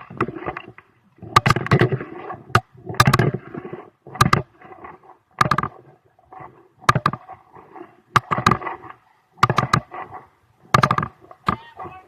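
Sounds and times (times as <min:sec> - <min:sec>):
sharp knocks and clatters: 0:00.0 - 0:03.5, 0:04.1 - 0:04.5, 0:05.4 - 0:05.9, 0:06.8 - 0:07.4, 0:08.1 - 0:10.1, 0:10.7 - 0:11.6.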